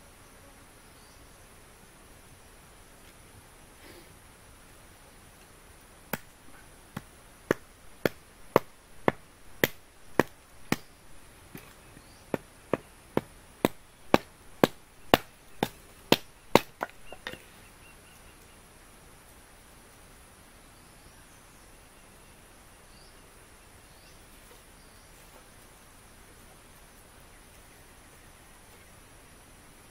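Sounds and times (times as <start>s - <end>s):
wood being chopped: 6.1s - 17.5s.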